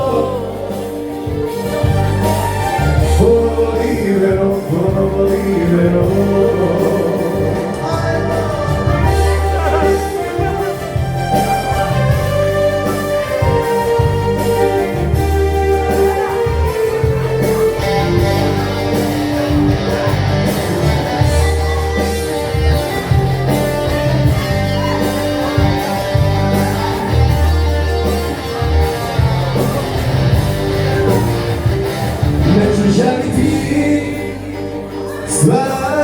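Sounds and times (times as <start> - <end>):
lead guitar: 0.0 - 36.0
live band playing pop ballad: 0.0 - 36.0.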